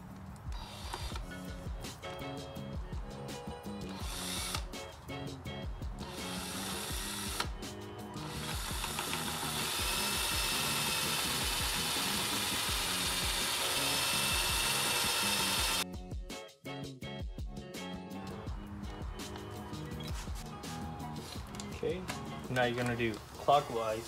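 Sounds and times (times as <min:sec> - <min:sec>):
background music: 0:00.0 - 0:24.0
power drill drilling: 0:00.5 - 0:01.5, 0:03.8 - 0:04.7, 0:06.0 - 0:07.6, 0:08.2 - 0:15.8.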